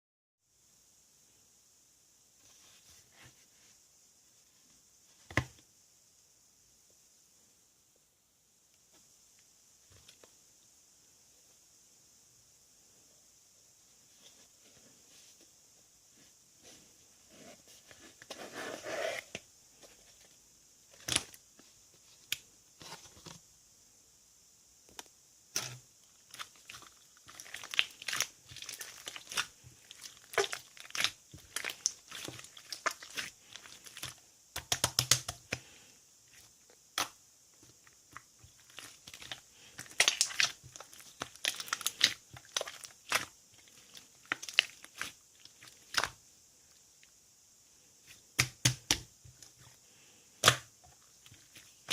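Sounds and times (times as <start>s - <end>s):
slime squished by hand: 25.5s - 35.6s, 38.1s - 46.2s.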